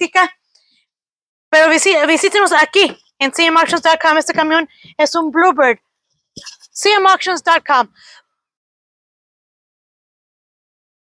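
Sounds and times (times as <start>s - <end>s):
person speaking: 1.6s - 5.8s, 6.4s - 8.2s.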